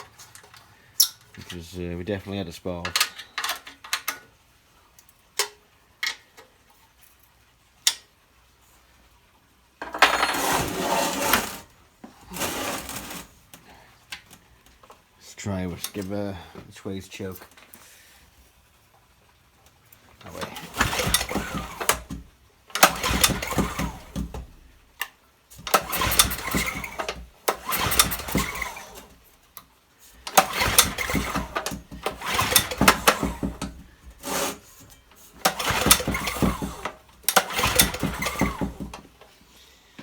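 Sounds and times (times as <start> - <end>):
generator recoil cord pulls: 12.3 - 13.4, 20.2 - 29.2, 30.2 - 39.3
small engine cranking: 12.3 - 13.4, 20.2 - 24.6, 25.6 - 29.2, 30.2 - 39.2.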